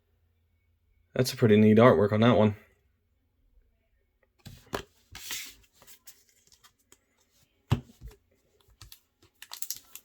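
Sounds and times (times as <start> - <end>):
card packaging rustling: 4.5 - 10.0.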